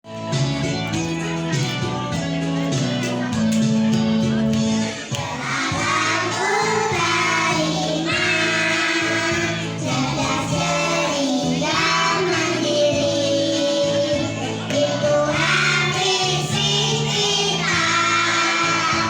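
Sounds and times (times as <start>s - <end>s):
instrumental backing music: 0.0s - 19.0s
children singing together: 5.2s - 19.0s.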